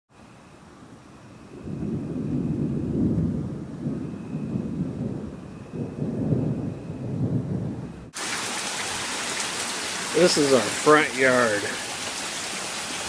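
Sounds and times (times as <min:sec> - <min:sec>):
rolling thunder: 0:01.4 - 0:08.3.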